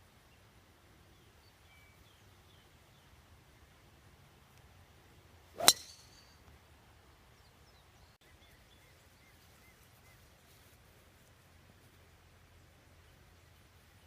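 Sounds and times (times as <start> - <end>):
golf club striking ball: 5.6 - 6.3.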